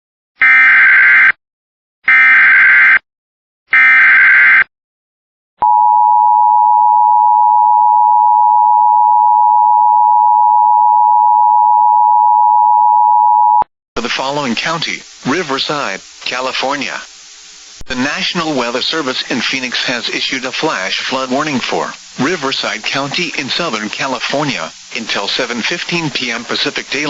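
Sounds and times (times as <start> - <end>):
buzzy data bursts: 14.0 - 27.0.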